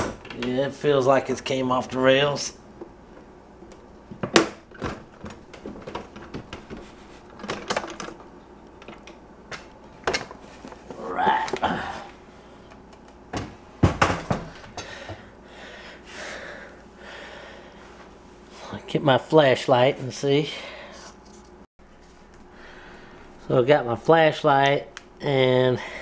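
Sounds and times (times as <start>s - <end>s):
drawer knocking and clattering: 13.3s - 14.6s.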